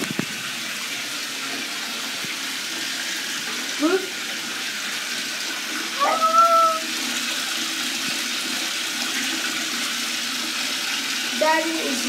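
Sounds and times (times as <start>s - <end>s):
tap running into bathtub: 0.0s - 12.0s
high-pitched call: 6.0s - 6.9s.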